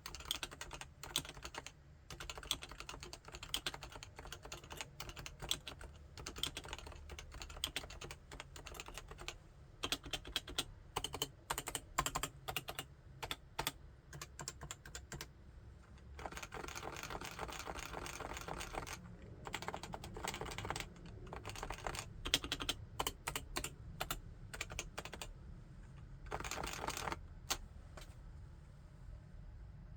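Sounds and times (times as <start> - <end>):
keyboard typing: 0.0 - 15.3, 16.2 - 25.3, 26.3 - 27.6.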